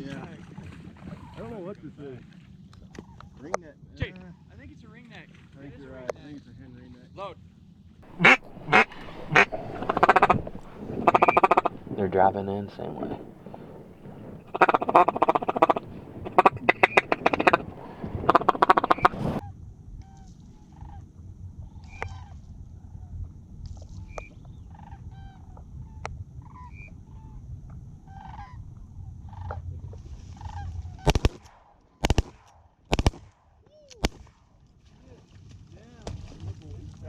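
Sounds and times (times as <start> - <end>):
duck call quacking: 8.1 - 19.4.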